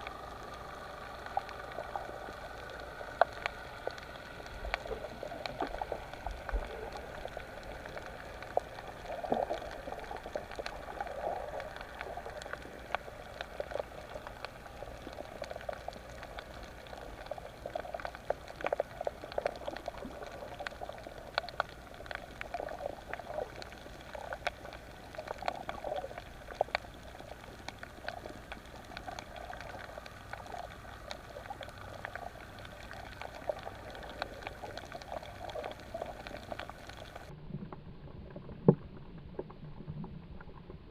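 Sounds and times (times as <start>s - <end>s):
sharp underwater clicks: 0.0s - 37.3s
underwater bubbling and gurgling: 0.0s - 40.9s.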